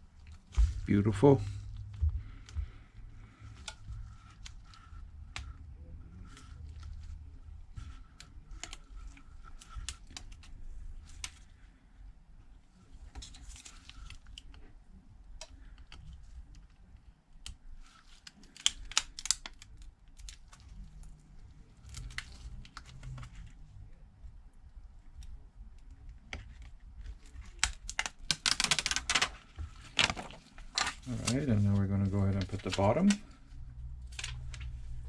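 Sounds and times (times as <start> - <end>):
adhesive tape crinkling and peeling: 6.2 - 11.6, 15.4 - 23.5, 25.2 - 31.6.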